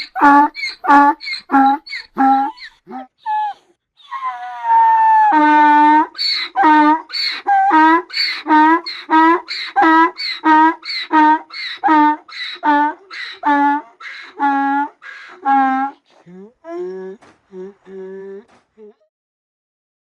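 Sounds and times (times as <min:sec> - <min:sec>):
donkey braying: 0:00.0 - 0:16.0.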